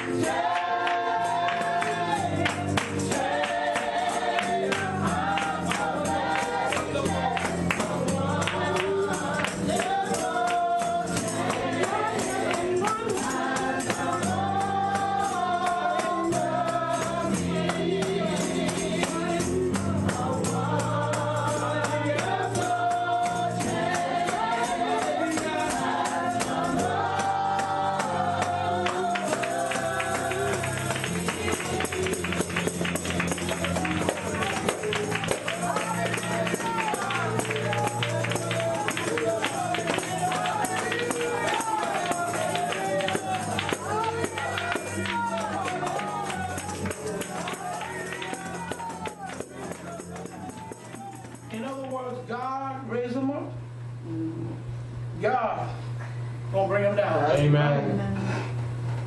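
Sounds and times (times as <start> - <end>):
voices singing together: 0.0 - 52.3
tambourine: 15.3 - 51.6.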